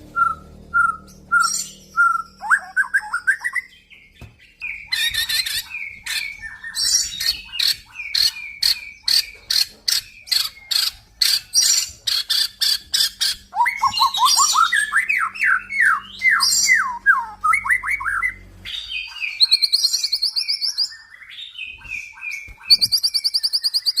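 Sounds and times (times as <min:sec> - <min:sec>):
bird singing varied song: 0:00.0 - 0:24.0.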